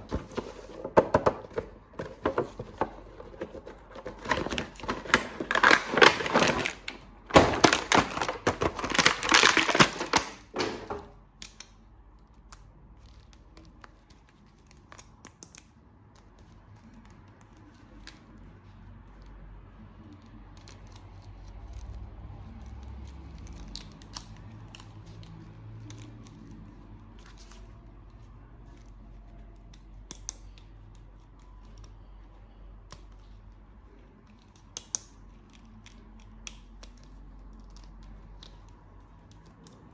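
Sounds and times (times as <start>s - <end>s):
packaging crackling and tearing: 0.0s - 10.9s.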